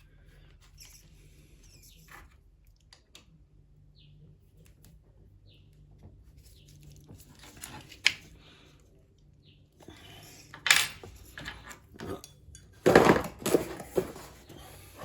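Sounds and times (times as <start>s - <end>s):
small metal parts clinking: 10.3s - 12.8s
metal parts clattering: 10.4s - 14.1s.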